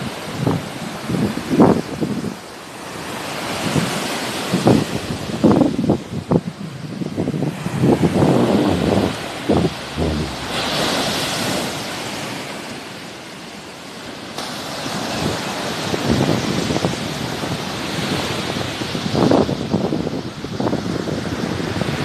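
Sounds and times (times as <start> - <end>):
wind buffeting microphone: 4.6 - 11.9
sea waves washing in: 6.6 - 13.6.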